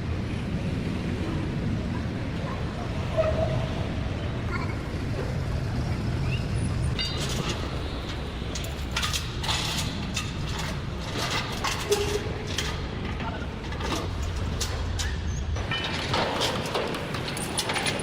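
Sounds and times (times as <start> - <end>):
metallic clicks and knocks: 7.0 - 18.0.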